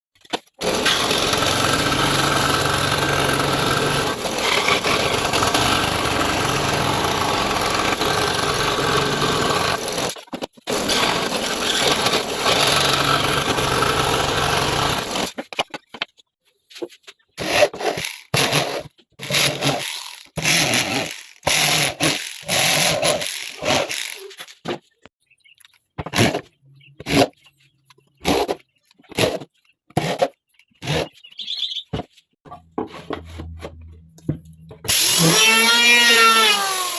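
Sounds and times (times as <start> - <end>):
power tool running: 0.6 - 10.1, 10.7 - 15.3, 19.2 - 24.3, 33.0 - 36.9.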